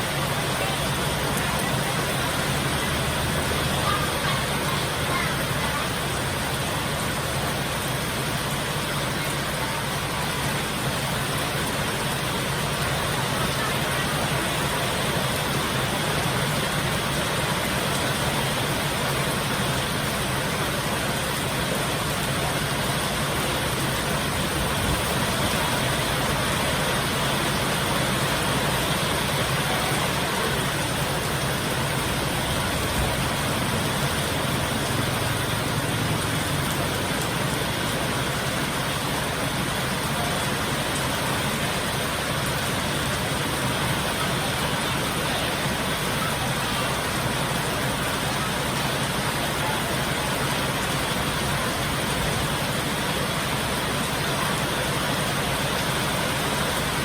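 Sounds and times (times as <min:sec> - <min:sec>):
heavy rain pouring: 0:00.0 - 0:57.0.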